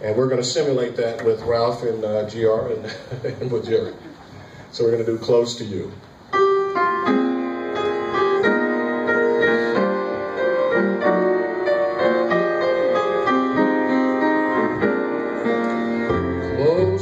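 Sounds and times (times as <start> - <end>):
slow keyboard music: 6.3 - 17.0.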